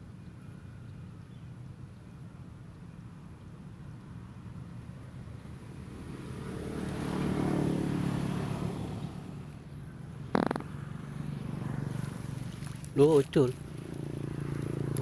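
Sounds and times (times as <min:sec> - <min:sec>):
vehicle engine passing by: 0:05.3 - 0:15.0.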